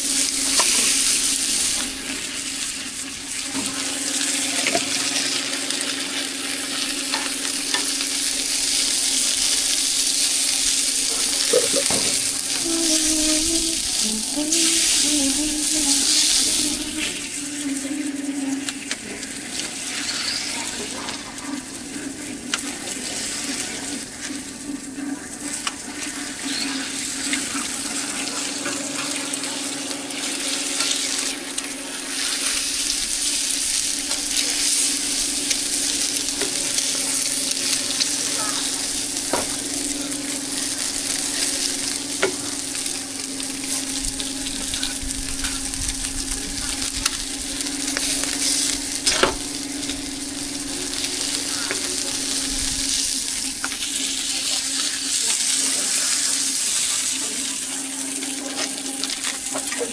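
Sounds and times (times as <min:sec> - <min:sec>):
food sizzling in hot oil: 0:00.0 - 0:59.9
steady low hum: 0:06.4 - 0:19.6, 0:31.2 - 0:55.2.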